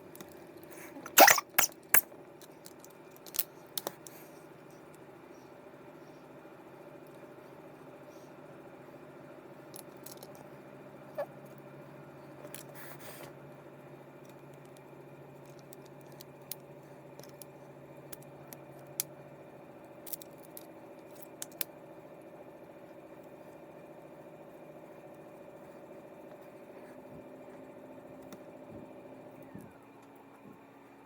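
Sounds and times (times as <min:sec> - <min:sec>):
small parts and tools clicking: 0:01.1 - 0:05.0, 0:09.7 - 0:10.4, 0:14.2 - 0:19.1, 0:20.0 - 0:21.7.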